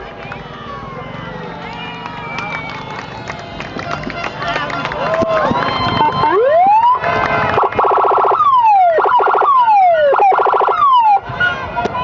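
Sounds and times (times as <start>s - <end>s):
electronic police siren: 6.0s - 11.2s.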